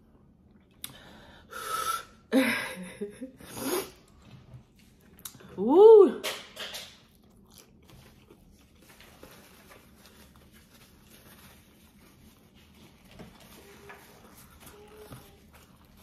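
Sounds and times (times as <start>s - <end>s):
chewing and eating sounds: 4.0s - 5.6s, 6.9s - 16.0s.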